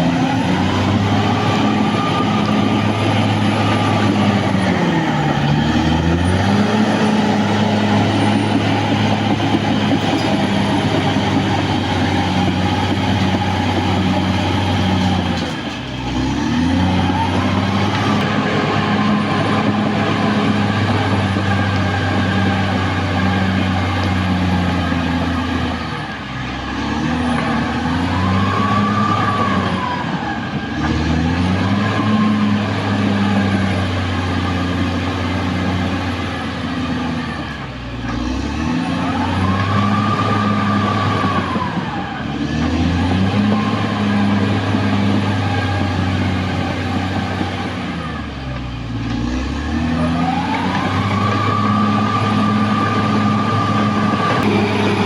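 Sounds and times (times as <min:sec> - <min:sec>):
bulldozer diesel engine under load: 0:00.0 - 0:55.0
machine whine: 0:50.6 - 0:55.0.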